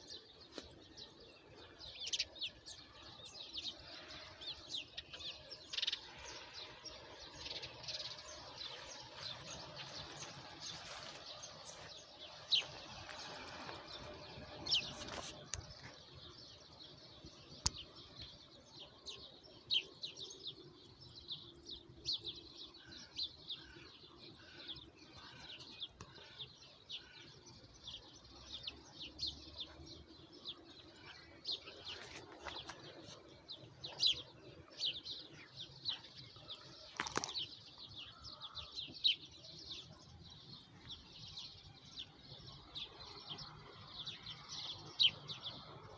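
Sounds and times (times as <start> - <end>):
songbirds chirping and singing: 0.0 - 45.9.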